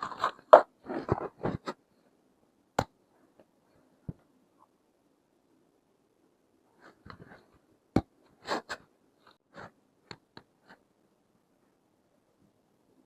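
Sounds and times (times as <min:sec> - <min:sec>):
scraping and rustling: 0:00.0 - 0:01.8.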